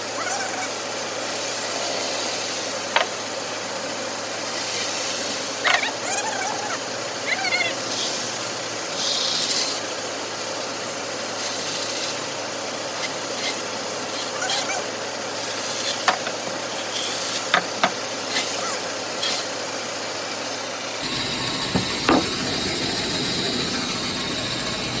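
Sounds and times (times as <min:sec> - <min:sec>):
wood knocks and taps: 0:16.1 - 0:16.4, 0:17.6 - 0:18.0, 0:21.0 - 0:24.0
woodworking machine hissing: 0:21.0 - 0:25.0.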